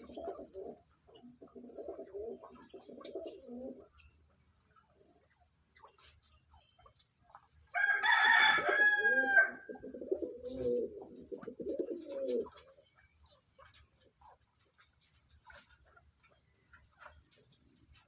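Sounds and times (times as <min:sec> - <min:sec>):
pigeon cooing: 0:00.0 - 0:04.0, 0:08.0 - 0:16.0.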